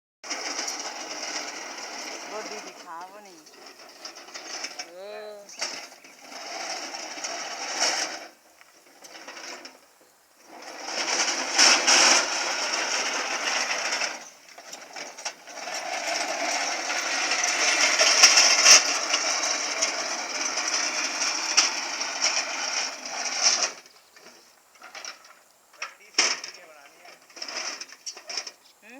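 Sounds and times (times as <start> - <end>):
lawn mower running: 0.2 - 28.9.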